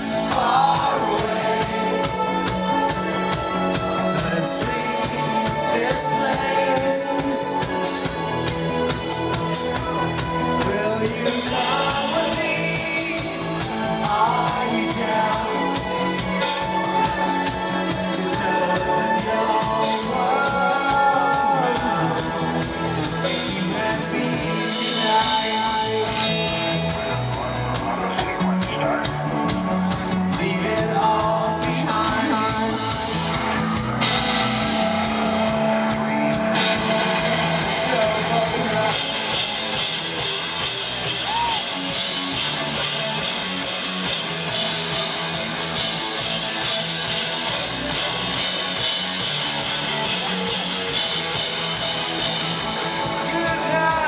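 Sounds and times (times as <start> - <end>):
drum kit: 0.0 - 54.0
guitars: 0.0 - 54.0
person singing: 0.0 - 54.0.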